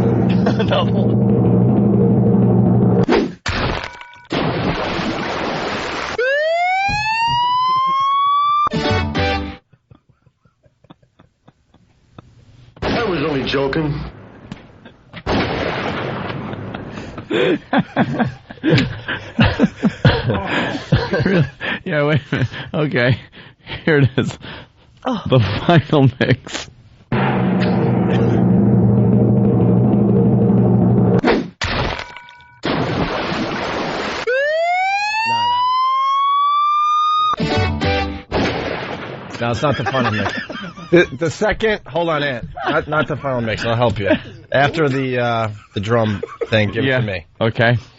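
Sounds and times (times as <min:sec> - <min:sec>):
men chuckling and laughing: 0:00.0 - 0:01.2, 0:07.1 - 0:08.3, 0:09.7 - 0:12.3, 0:16.4 - 0:22.8, 0:39.4 - 0:41.5, 0:42.4 - 0:47.0
sudden burst of noise: 0:00.0 - 0:03.1, 0:27.1 - 0:31.2
rising siren-like wail: 0:06.2 - 0:08.7, 0:27.2 - 0:31.2, 0:34.3 - 0:37.4
hit: 0:27.1 - 0:30.1.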